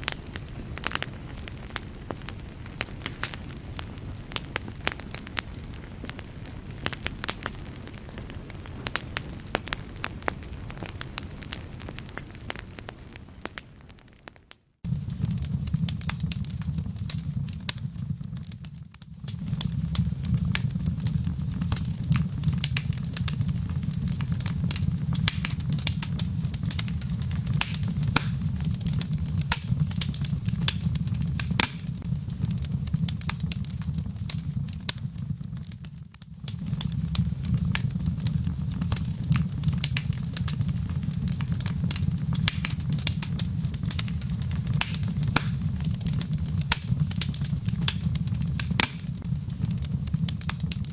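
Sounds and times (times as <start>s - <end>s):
wood fire crackling: 0.0s - 50.9s
low wind rumble: 14.9s - 35.4s.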